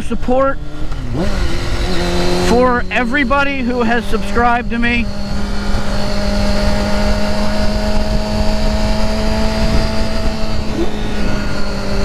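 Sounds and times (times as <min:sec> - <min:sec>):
motorcycle engine cruising: 0:00.0 - 0:12.0
wind rumble on microphone: 0:04.6 - 0:12.0.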